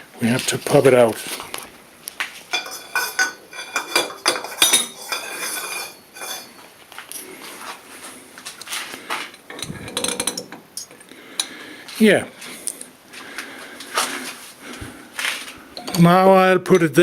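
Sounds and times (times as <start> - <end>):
steel parts clinking and knocking: 2.5 - 6.6, 9.3 - 11.5, 15.8 - 17.0.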